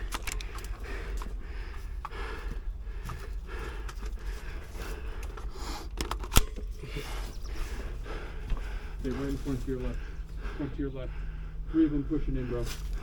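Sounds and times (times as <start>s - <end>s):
breathing close to microphone: 0.0s - 6.1s, 6.8s - 13.0s
rustling: 6.9s - 10.4s, 12.5s - 13.0s.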